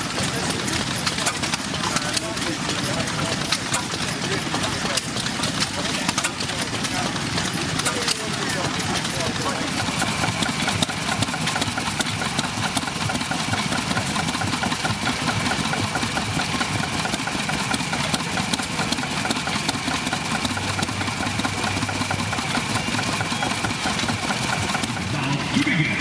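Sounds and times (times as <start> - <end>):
engine idling: 0.0 - 26.0.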